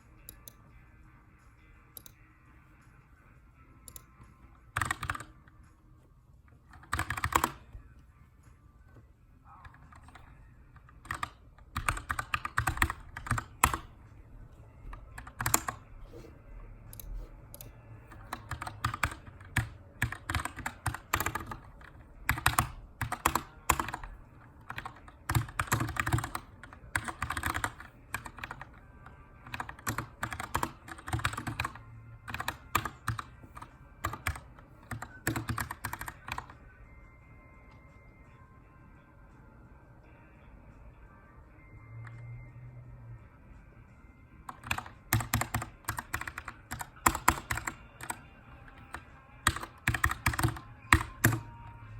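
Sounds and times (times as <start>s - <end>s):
mechanical keyboard typing: 4.7s - 5.4s, 6.7s - 7.6s, 9.6s - 13.9s, 14.9s - 15.8s, 16.9s - 28.8s, 29.4s - 36.5s, 44.5s - 51.6s.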